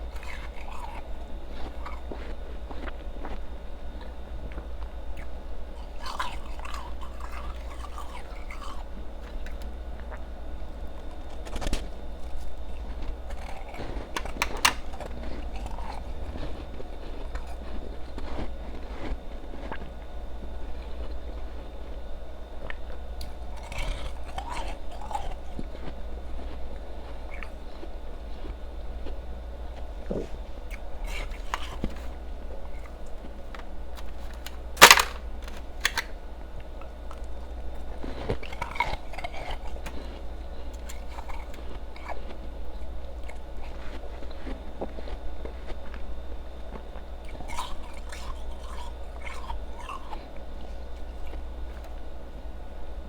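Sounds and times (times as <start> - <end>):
teeth crunching ice: 0.0 - 3.4, 4.0 - 21.6, 22.6 - 29.9, 30.6 - 52.1.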